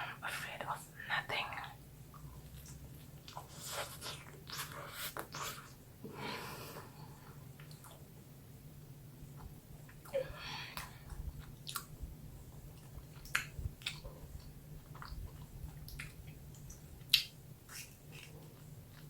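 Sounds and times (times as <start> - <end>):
faint low hum: 0.0 - 19.0
wet chewing mouth clicks: 10.8 - 12.0, 12.7 - 19.0.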